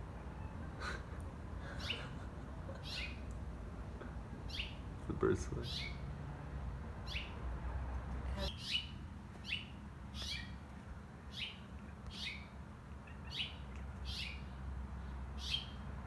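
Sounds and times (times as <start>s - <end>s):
songbird chirping: 2.8s - 3.4s, 4.0s - 6.2s, 7.0s - 7.4s, 8.3s - 15.9s.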